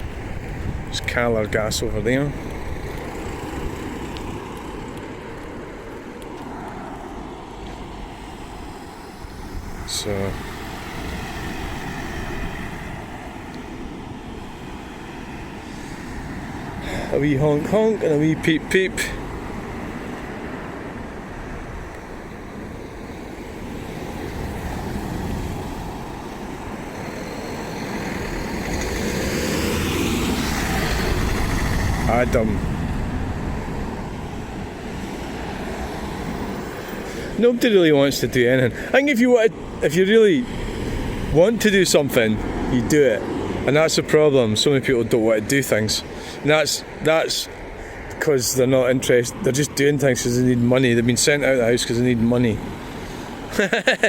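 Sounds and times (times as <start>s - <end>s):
wind on microphone: 0.0s - 16.9s, 27.9s - 37.1s
vehicle approaching: 0.0s - 21.4s, 22.1s - 54.0s
road traffic passing: 0.0s - 54.0s.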